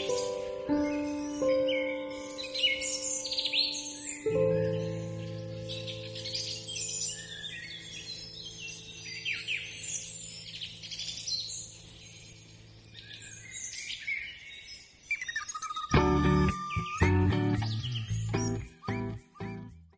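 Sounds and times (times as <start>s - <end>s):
birds chirping: 0.0s - 19.9s
louder music: 15.9s - 19.8s
sustained music chord: 16.0s - 19.6s.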